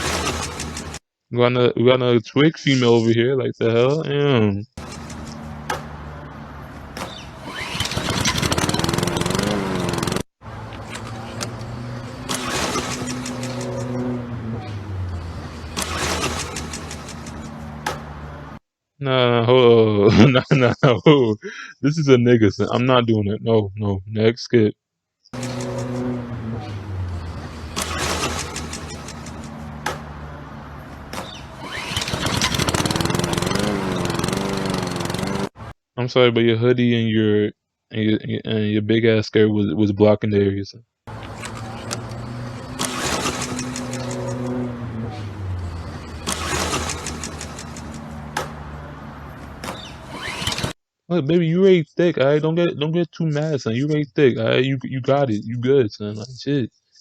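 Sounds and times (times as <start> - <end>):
lawn mower engine revving: 0.0 - 1.0, 4.8 - 18.6, 25.4 - 35.7, 41.1 - 50.8
steady engine hum: 4.8 - 18.6, 25.4 - 35.7, 41.1 - 50.8
sharp clicks: 27.1 - 30.2, 30.9 - 35.5, 41.1 - 44.5, 45.6 - 48.7.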